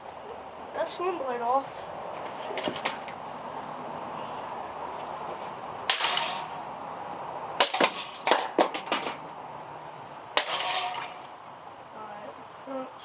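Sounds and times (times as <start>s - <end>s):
knocks and clacks of fan parts: 7.6s - 9.5s.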